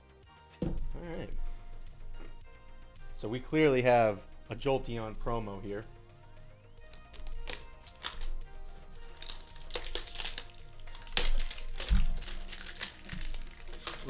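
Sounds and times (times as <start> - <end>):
faint background music: 0.0 - 14.0
dull bump: 0.6 - 1.6
plastic packaging crinkling: 6.9 - 14.0.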